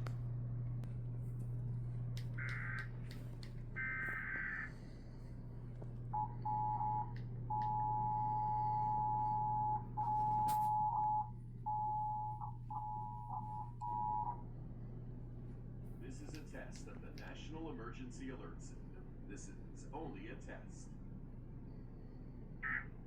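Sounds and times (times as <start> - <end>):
buzzy data bursts: 2.4 - 2.9
two-tone attention signal: 6.2 - 14.4.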